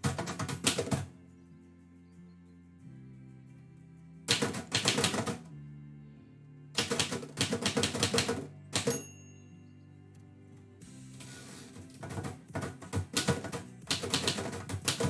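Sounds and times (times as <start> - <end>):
typewriter key strikes: 0.0 - 1.1, 4.3 - 5.4, 6.8 - 9.1, 12.0 - 15.0
background music: 0.0 - 15.0.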